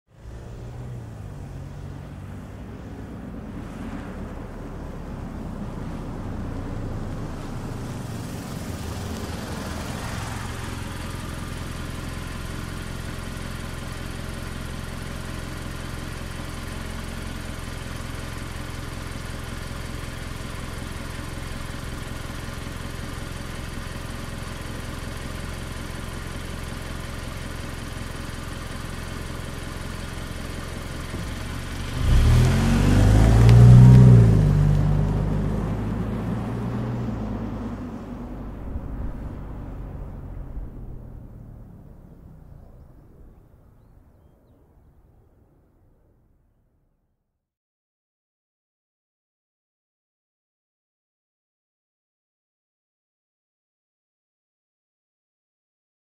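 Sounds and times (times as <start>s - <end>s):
car driving up: 0.1s - 46.4s
car engine idling: 4.3s - 46.6s.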